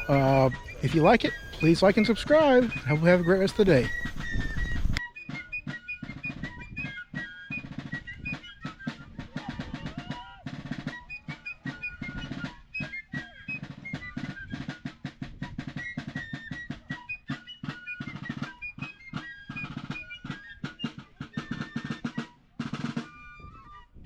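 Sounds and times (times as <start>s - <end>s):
high melody: 0.0s - 9.8s
snare drum rolls: 0.0s - 23.3s
drum beats: 0.0s - 24.0s.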